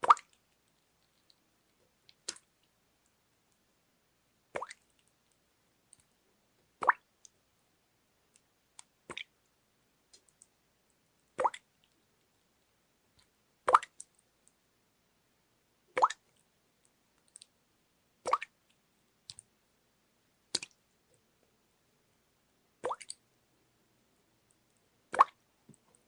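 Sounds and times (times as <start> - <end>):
water dripping: 0.0 - 3.6, 4.5 - 7.4, 8.3 - 9.5, 10.1 - 12.3, 13.1 - 14.6, 15.9 - 17.6, 18.2 - 19.5, 20.5 - 20.8, 22.8 - 23.3, 24.4 - 26.0.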